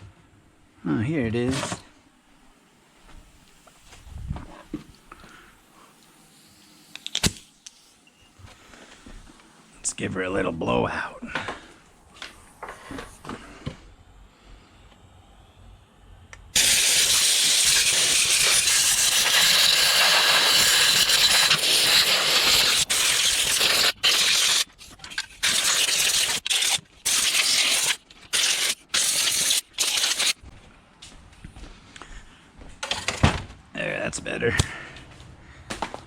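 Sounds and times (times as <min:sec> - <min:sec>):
compressed air blowgun hissing: 0:03.3 - 0:08.0, 0:16.6 - 0:30.4.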